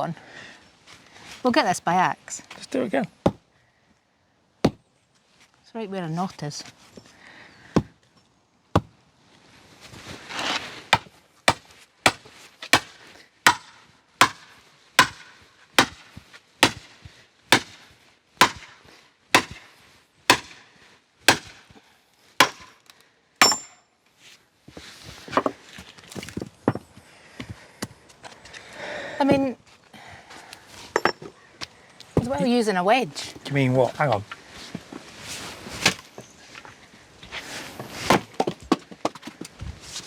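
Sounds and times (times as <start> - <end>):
axe chopping log: 7.8 - 8.0, 8.8 - 9.0, 10.9 - 16.9, 17.5 - 18.8, 19.4 - 19.7, 20.3 - 20.6, 21.3 - 21.8, 22.4 - 22.8, 23.4 - 23.7, 38.1 - 39.3.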